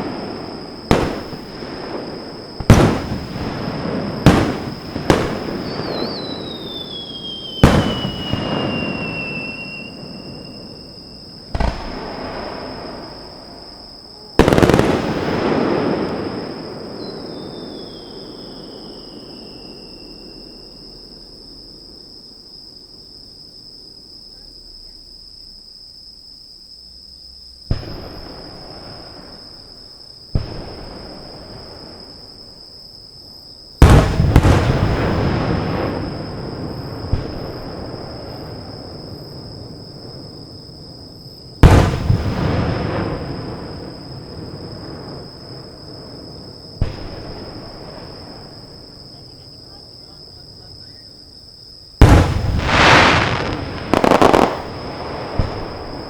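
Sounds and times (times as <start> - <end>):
fireworks crackling: 0.0 - 20.6, 33.8 - 39.8, 41.5 - 49.6, 52.0 - 56.0
fireworks booming: 0.0 - 22.0, 27.7 - 32.6, 33.8 - 50.8, 51.9 - 56.0.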